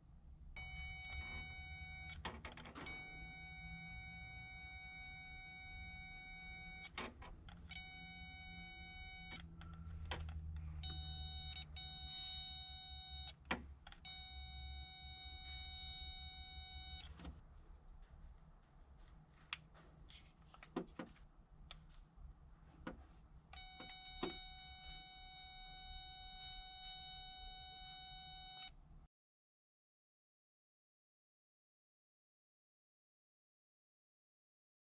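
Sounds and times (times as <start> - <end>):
high electronic beep: 0.6 - 2.2, 2.9 - 6.9, 10.8 - 13.4, 14.1 - 17.1.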